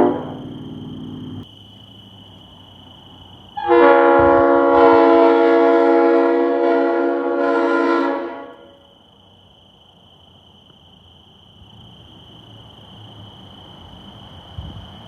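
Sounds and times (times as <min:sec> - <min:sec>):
locomotive air horn chord: 0:00.0 - 0:00.6, 0:03.6 - 0:08.9.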